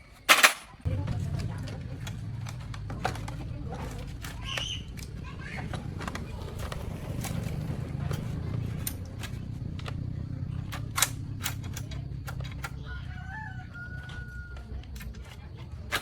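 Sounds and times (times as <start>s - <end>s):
sharp clicks and knocks: 0.2s - 12.8s
low rumble: 0.8s - 13.7s.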